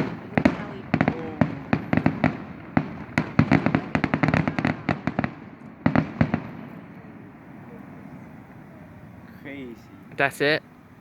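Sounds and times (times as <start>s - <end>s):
fireworks bangs and cracks: 0.0s - 8.6s.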